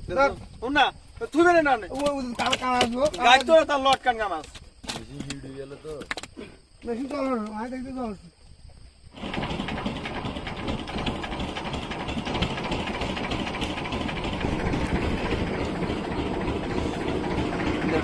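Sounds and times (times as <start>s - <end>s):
boat engine chugging: 9.1s - 18.0s.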